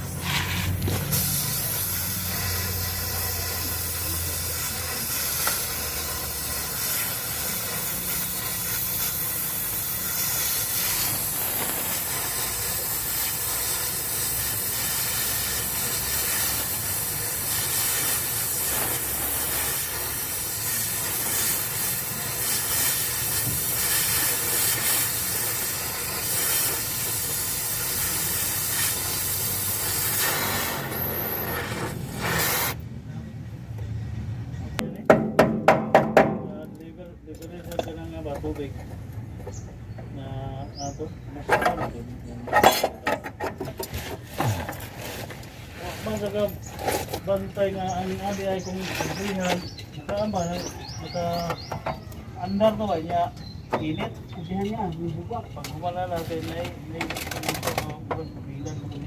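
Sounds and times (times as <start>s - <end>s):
loud hissing noise: 0.0s - 32.8s.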